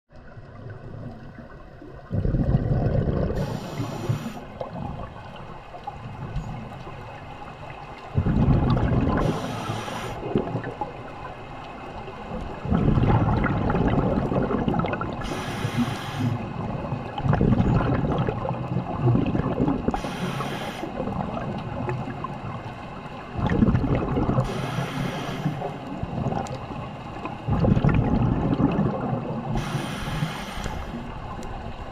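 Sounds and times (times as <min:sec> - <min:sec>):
exhaled bubbles rushing underwater: 0:00.1 - 0:31.9
regulator hiss: 0:03.4 - 0:04.6, 0:09.2 - 0:10.2, 0:15.2 - 0:16.4, 0:19.9 - 0:21.0, 0:24.4 - 0:25.9, 0:29.5 - 0:31.3.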